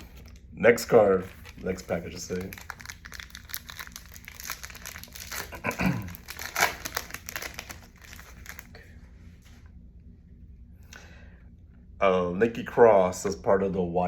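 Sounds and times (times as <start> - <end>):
plastic wrapper crinkling and tearing: 0.0 - 8.7.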